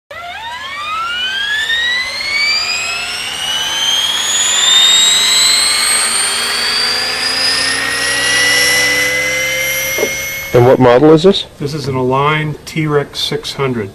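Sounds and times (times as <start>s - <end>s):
rc helicopter rotor whine: 0.1s - 11.2s.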